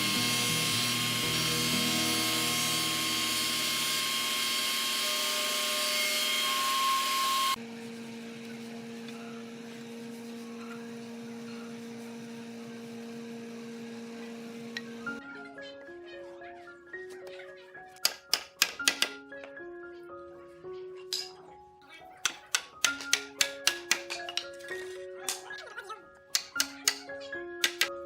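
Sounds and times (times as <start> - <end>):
power tool whining: 0.0 - 8.2.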